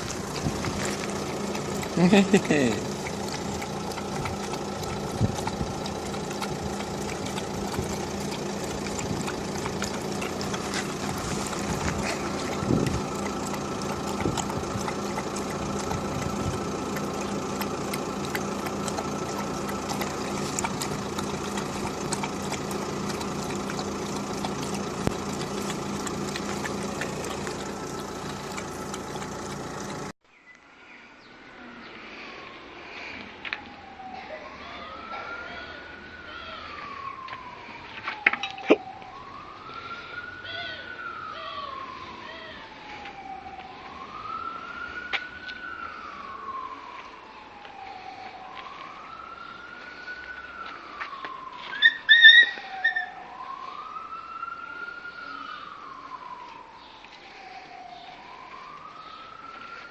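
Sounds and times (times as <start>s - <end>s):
steady mechanical hum: 0.0s - 30.2s.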